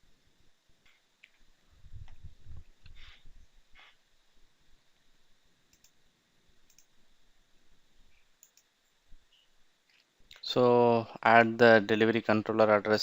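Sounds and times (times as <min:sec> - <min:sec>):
faint computer mouse clicks: 0:05.7 - 0:06.0, 0:06.7 - 0:06.9, 0:08.1 - 0:08.7.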